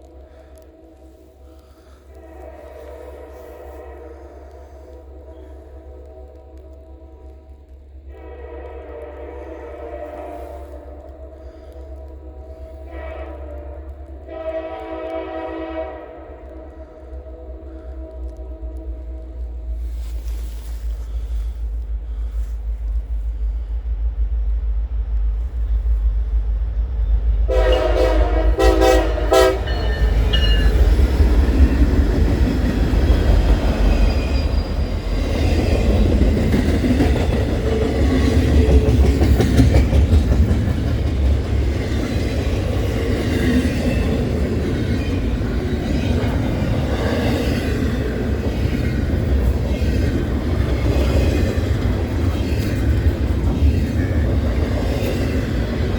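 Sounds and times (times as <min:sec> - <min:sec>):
train air horn blasts: 0:00.0 - 0:22.6, 0:27.5 - 0:34.8
diesel locomotive rumble: 0:00.0 - 0:55.9
train wheel clatter: 0:25.0 - 0:55.9.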